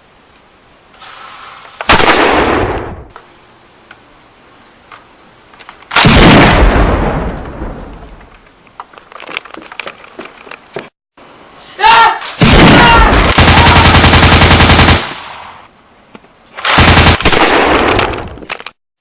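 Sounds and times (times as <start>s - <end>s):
explosion: 6.0s - 8.2s, 12.4s - 13.8s.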